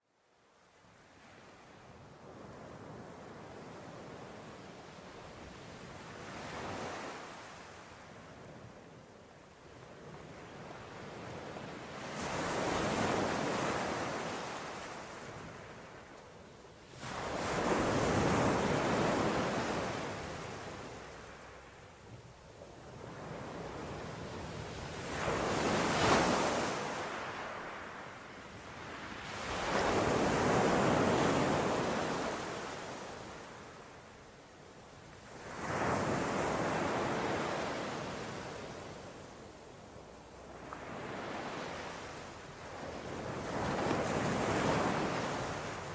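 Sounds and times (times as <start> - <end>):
waves breaking on beach: 10.4 - 16.1, 16.9 - 22.0, 22.9 - 34.0, 40.4 - 45.9.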